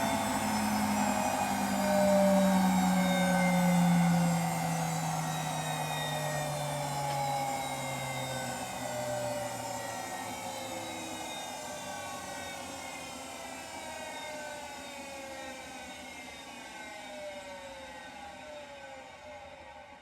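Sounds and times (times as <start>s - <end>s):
washing machine motor whine: 0.0s - 13.4s.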